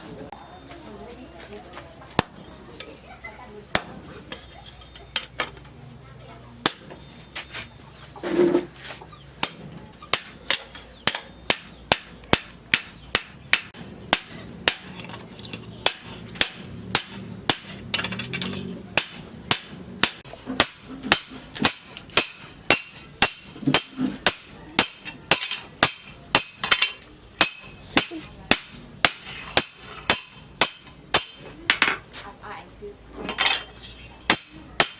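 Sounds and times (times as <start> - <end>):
hammer ringing on steel anvil: 15.8 - 31.5, 34.3 - 34.9.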